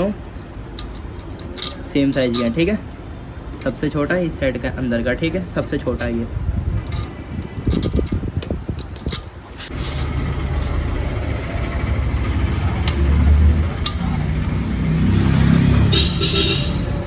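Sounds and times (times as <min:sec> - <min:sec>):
metal parts and tools clinking: 0:00.4 - 0:02.7, 0:06.9 - 0:13.1
vehicle engine running: 0:09.7 - 0:17.0
sharp metal clicks: 0:13.8 - 0:14.6.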